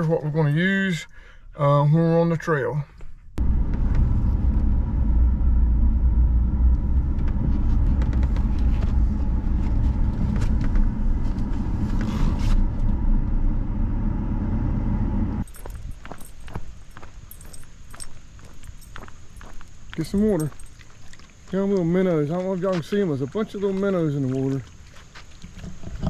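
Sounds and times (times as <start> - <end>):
truck engine and tyre rumble: 3.0 - 26.0
light clicks and jingles: 15.4 - 24.7.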